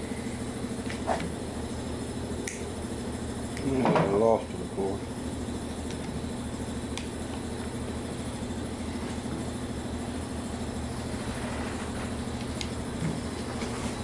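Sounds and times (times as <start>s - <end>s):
small motor running: 4.7s - 14.0s.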